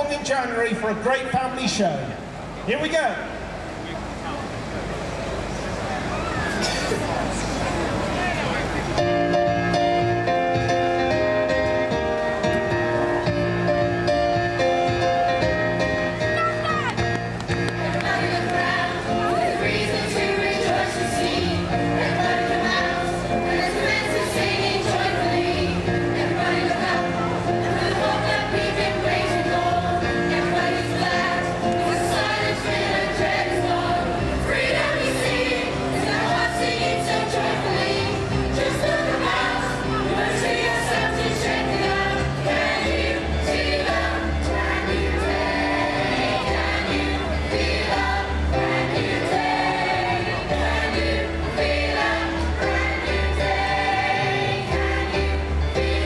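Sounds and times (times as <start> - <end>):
group singing a show song: 17.7 - 56.0.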